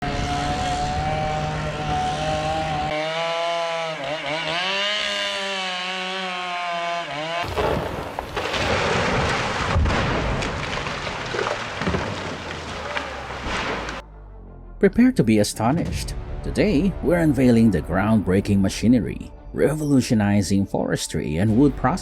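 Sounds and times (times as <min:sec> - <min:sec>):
chainsaw engine running: 0:00.0 - 0:07.7.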